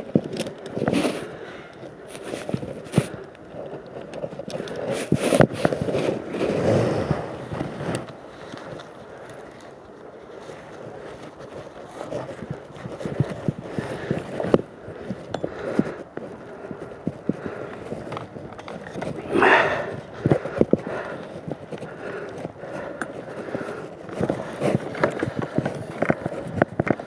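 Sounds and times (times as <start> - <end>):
rustling and scraping: 0.0 - 27.0
wind buffeting microphone: 0.0 - 27.0.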